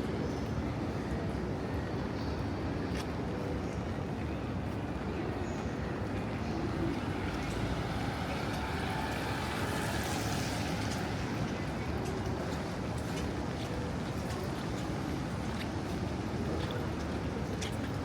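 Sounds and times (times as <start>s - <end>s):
low traffic rumble: 6.0s - 18.0s.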